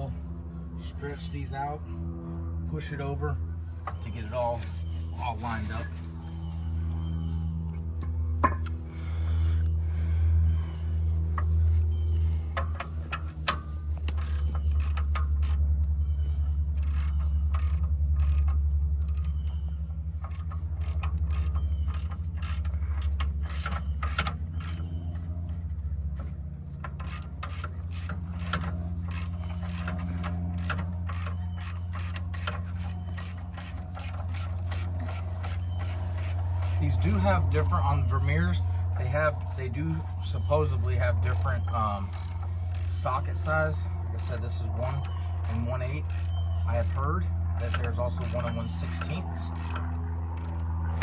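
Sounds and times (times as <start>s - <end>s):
steady low hum: 0.0s - 51.0s
ratchet wrench clicking: 14.0s - 15.6s, 16.7s - 19.5s, 20.2s - 24.9s, 27.0s - 37.7s, 41.3s - 51.0s.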